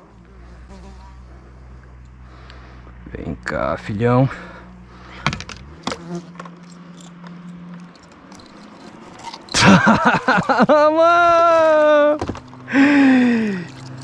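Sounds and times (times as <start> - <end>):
man yelling: 10.7 - 12.2.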